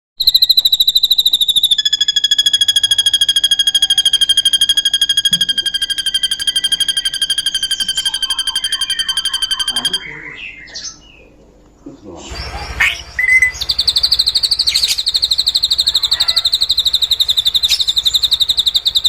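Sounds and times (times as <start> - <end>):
bird trilling: 0.2 - 19.0.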